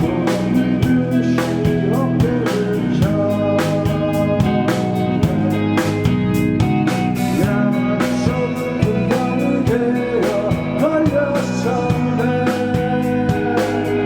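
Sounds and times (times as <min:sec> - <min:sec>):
drum hits: 0:00.0 - 0:09.8
melodic guitar line bending: 0:00.0 - 0:14.0
rock band playing live: 0:00.0 - 0:14.0.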